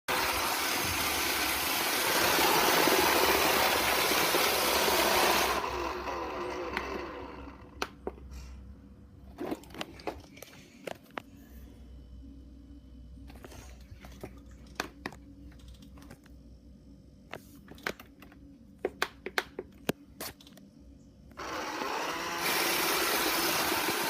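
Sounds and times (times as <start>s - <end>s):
robot vacuum whirring: 0.1s - 7.7s, 21.4s - 24.0s.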